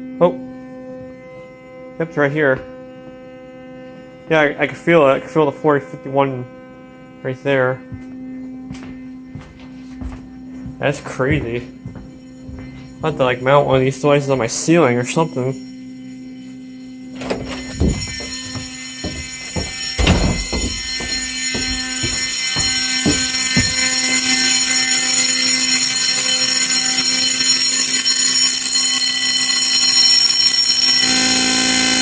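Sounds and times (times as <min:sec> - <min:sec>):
fire alarm horn: 0:00.0 - 0:32.0
knocks and thumps: 0:17.2 - 0:24.2.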